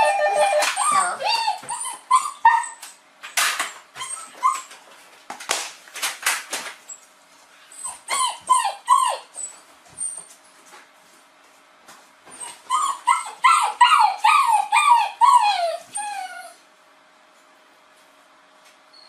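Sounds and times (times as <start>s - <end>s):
dog whining and whimpering: 0.0s - 3.0s, 3.9s - 4.8s, 7.7s - 10.4s, 12.3s - 16.7s.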